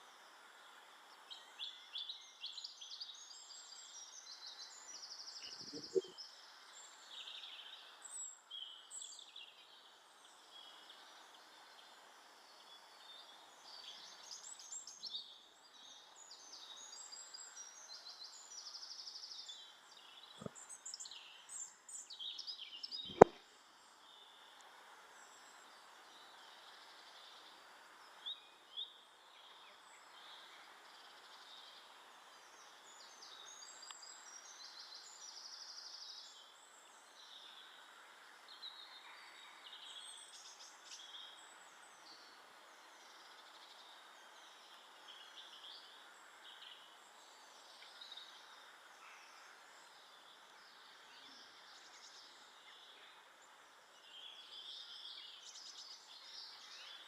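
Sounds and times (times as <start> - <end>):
steady background hiss: 0.0 - 57.0
birds chirping and trilling: 5.2 - 6.2.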